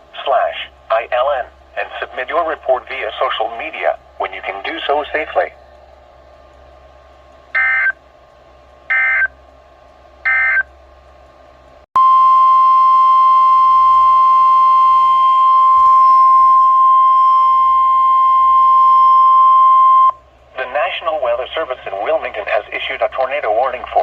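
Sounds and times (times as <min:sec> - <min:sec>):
steady warning alarm tone: 0:07.5 - 0:08.0, 0:08.9 - 0:09.4, 0:10.2 - 0:10.7, 0:12.0 - 0:20.2
digital data tone bursts: 0:07.6 - 0:08.0.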